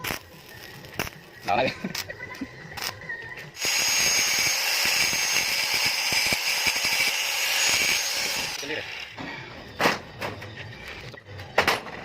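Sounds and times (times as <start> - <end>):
power tool whining: 3.6 - 9.1.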